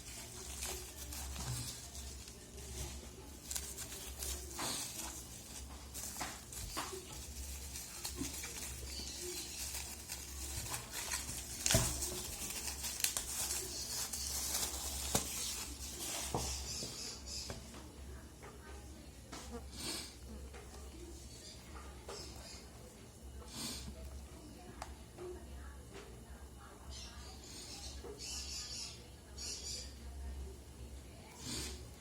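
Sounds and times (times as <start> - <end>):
plastic crinkling and rustling: 0.0 - 16.9.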